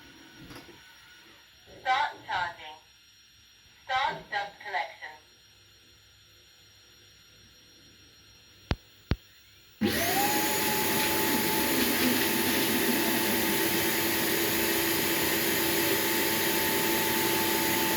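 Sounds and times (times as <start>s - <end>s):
robot vacuum motor whine: 9.8s - 17.9s.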